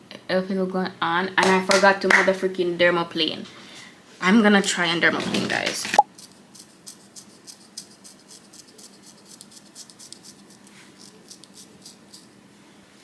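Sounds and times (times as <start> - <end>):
razor scraping skin: 6.0 - 12.4.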